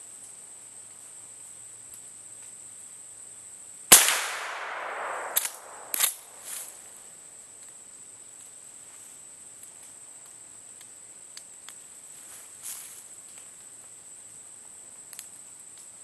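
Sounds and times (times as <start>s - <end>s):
rifle shot with echo: 3.9s - 6.5s.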